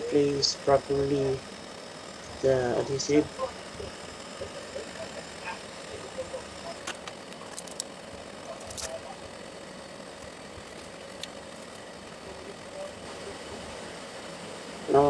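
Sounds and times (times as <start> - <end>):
hot air tool blowing: 0.0 - 15.0
light clicks: 6.7 - 9.1.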